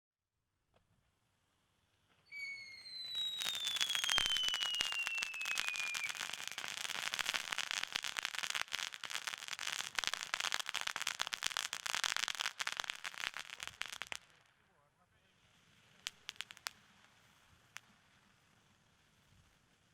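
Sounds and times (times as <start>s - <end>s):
firework crackling and pops: 2.2s - 14.7s, 15.3s - 19.9s
falling whistle: 2.3s - 6.6s
firework fountain hissing: 2.3s - 14.5s, 15.4s - 19.9s.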